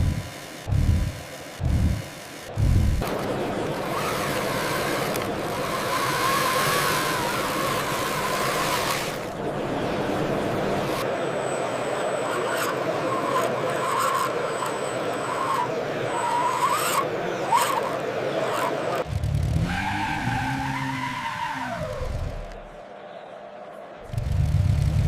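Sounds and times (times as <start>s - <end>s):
model engine drone: 0.0s - 19.7s
small tyres squealing: 3.0s - 22.7s.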